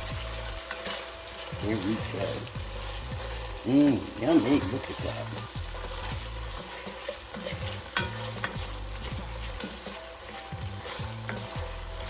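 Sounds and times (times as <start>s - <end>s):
vegetables sizzling in a pan: 0.0s - 12.0s
utensil clicking against pan: 3.8s - 12.0s.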